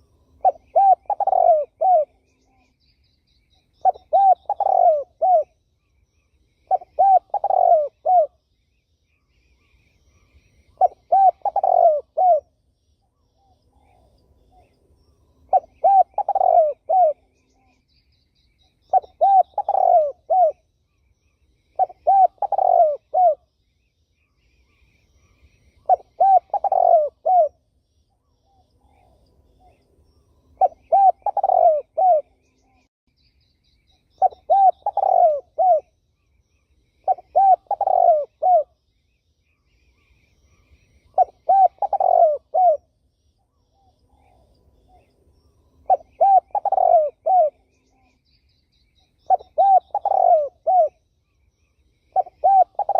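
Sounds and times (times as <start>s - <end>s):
dove cooing: 0.0s - 2.7s, 3.8s - 5.6s, 6.7s - 8.4s, 10.7s - 12.5s, 15.5s - 17.8s, 18.9s - 20.6s, 21.8s - 23.5s, 25.2s - 27.6s, 30.6s - 32.6s, 34.2s - 36.0s, 37.0s - 38.8s, 40.5s - 42.9s, 45.8s - 48.1s, 49.2s - 51.0s, 52.1s - 52.9s
small birds chirping: 0.0s - 52.9s.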